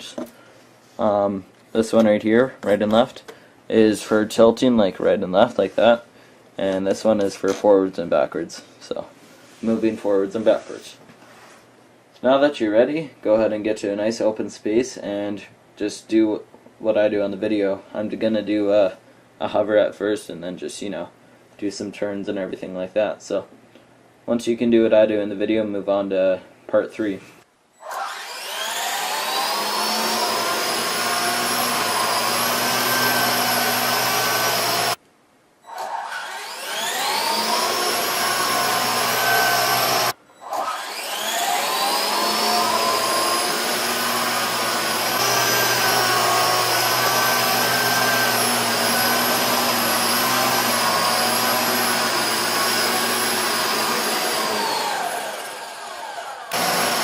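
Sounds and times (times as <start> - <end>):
rc helicopter rotors whining: 35.7 - 57.0.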